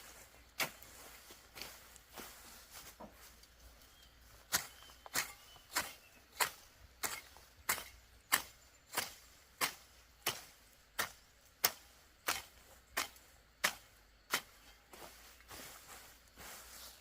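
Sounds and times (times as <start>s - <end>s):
soft scraping and rustling: 0.0s - 5.9s, 14.4s - 17.0s
hoe chopping into soil: 4.5s - 15.0s.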